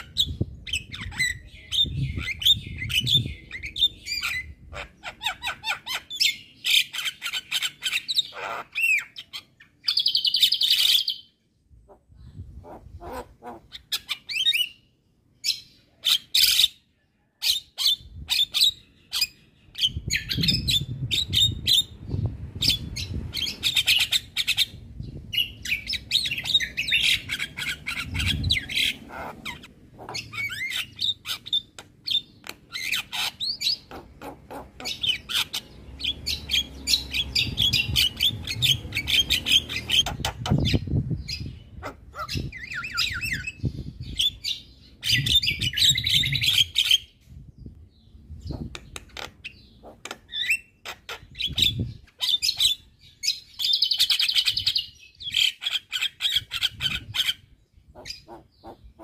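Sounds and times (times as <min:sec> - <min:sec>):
myna bird singing: 0:00.0 - 0:59.0.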